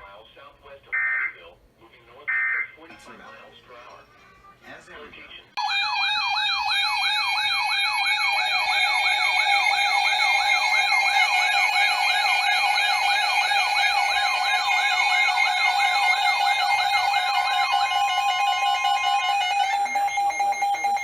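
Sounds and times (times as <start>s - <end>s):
yelping siren tone: 5.6s - 21.0s.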